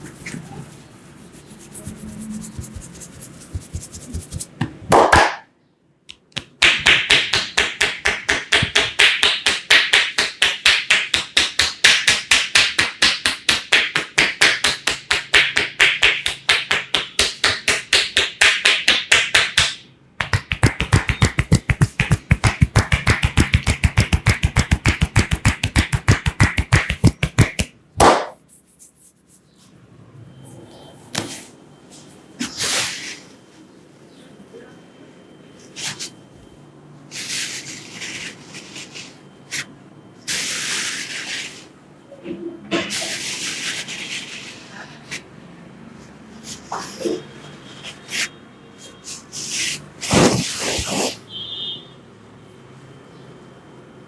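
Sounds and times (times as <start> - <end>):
hands slapping in massage: 3.5 - 5.4, 6.1 - 28.4.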